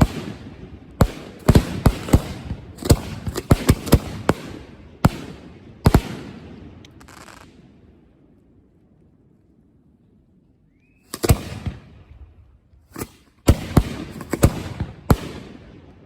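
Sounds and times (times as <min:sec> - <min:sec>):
fireworks bangs with echo: 0:00.0 - 0:07.8, 0:13.0 - 0:16.0.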